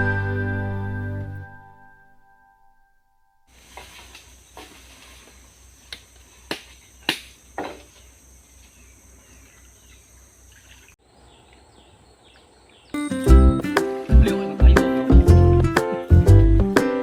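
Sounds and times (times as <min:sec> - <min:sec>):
insect chorus droning: 0:03.5 - 0:13.0
faint chirps: 0:07.9 - 0:13.3.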